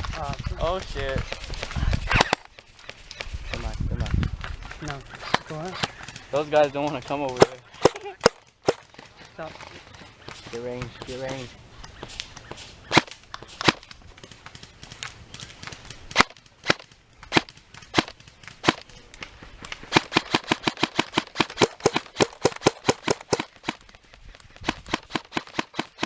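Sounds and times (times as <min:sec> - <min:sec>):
airsoft guns firing: 0:01.3 - 0:03.3, 0:05.2 - 0:09.1, 0:12.0 - 0:19.0, 0:19.7 - 0:26.0.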